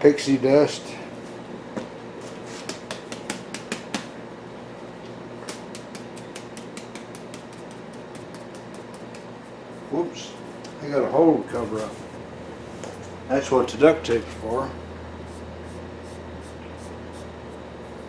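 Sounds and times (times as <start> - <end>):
steady low hum: 0.0 - 18.0
quick light sharp taps: 5.4 - 9.3.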